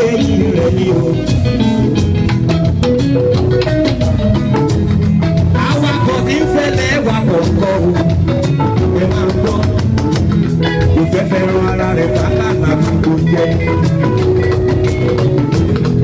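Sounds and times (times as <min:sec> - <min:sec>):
guitar: 0:00.0 - 0:16.0
steady drum beat: 0:00.0 - 0:16.0
upbeat band music: 0:00.0 - 0:16.0.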